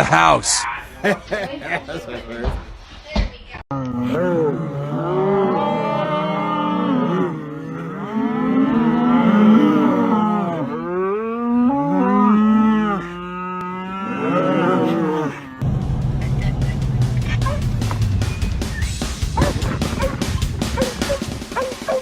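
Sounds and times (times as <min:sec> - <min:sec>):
cattle mooing: 0:03.7 - 0:15.6, 0:19.4 - 0:22.0.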